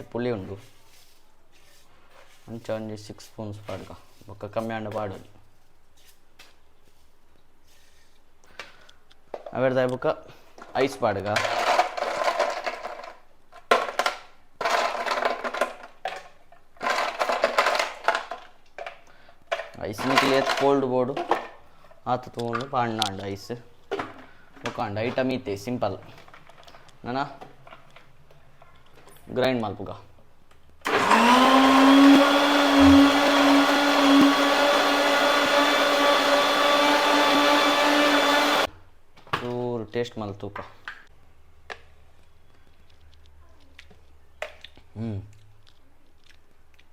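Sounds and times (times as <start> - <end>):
mixer grinder motor whine: 30.8 - 38.7.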